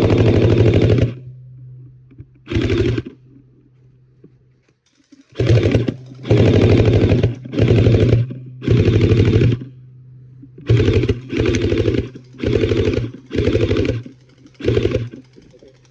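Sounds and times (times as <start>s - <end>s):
gearbox motor whirring: 0.0s - 3.6s, 4.9s - 9.8s, 10.4s - 15.9s
toy blaster rattle of shots: 4.9s - 9.6s, 10.7s - 15.9s.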